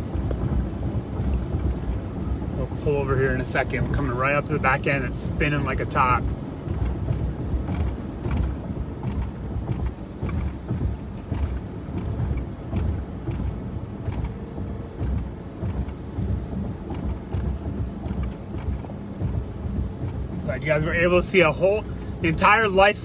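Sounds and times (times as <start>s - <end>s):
vehicle road rumble from inside: 0.0s - 23.0s
light clicks and knocks: 3.4s - 20.5s.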